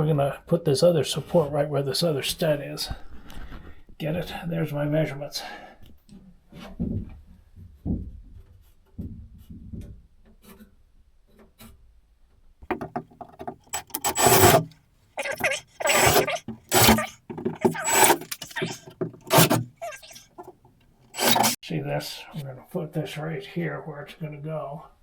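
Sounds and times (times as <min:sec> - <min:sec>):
rubbing scraping strokes: 0:12.7 - 0:21.6.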